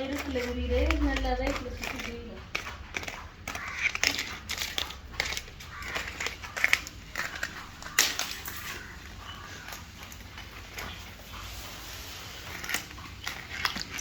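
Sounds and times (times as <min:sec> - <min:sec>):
puppy chewing and crunching: 0:00.0 - 0:14.0.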